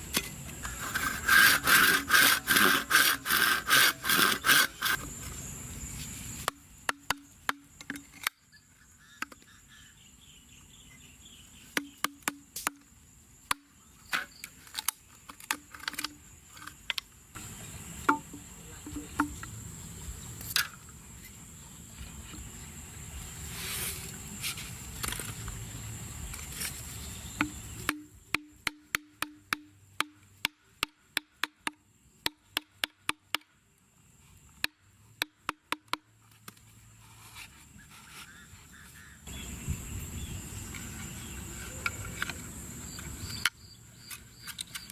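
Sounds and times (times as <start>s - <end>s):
sharp knocks and clicks: 18.0s - 19.5s, 27.4s - 33.5s.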